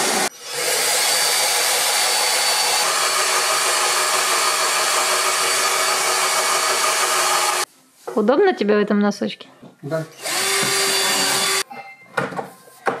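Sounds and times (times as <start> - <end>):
electric fan motor rushing: 0.0 - 7.7.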